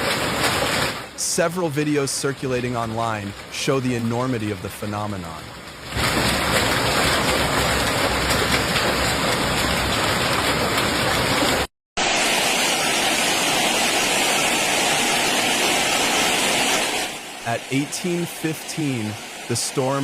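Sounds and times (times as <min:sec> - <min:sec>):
hail and heavy rain pelting: 0:00.0 - 0:01.2, 0:01.8 - 0:11.7.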